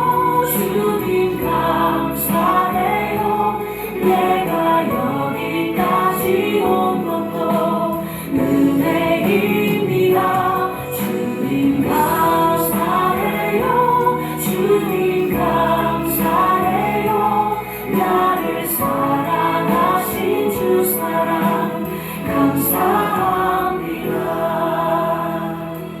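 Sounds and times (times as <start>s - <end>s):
congregation singing a hymn: 0.0s - 26.0s.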